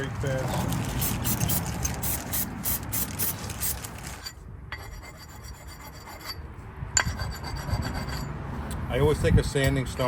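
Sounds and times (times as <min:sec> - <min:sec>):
sanding stone rasping on metal: 0:04.8 - 0:06.4, 0:07.0 - 0:08.3.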